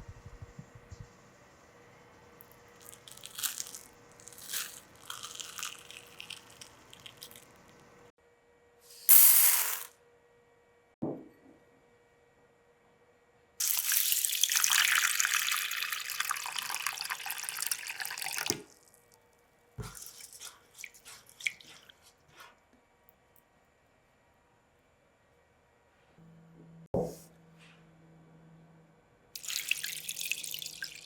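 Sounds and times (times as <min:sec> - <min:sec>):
water running from a tap: 0:13.6 - 0:18.7, 0:19.8 - 0:22.1, 0:29.4 - 0:31.0.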